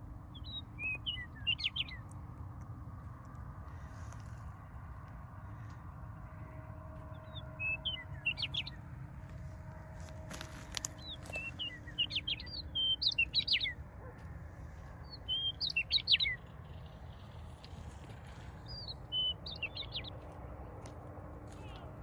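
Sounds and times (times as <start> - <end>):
low background rumble: 0.0 - 22.0
songbird singing: 0.3 - 2.2, 6.2 - 8.8, 10.3 - 14.1, 15.0 - 20.2.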